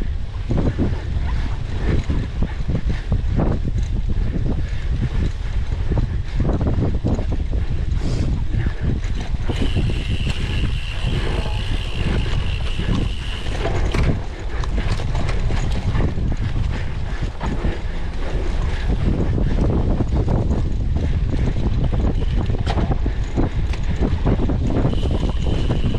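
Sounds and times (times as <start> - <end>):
bike rattling over rough ground: 0.0 - 25.9
wind rumbling on microphone: 0.0 - 25.9
steady high tone: 9.6 - 13.6.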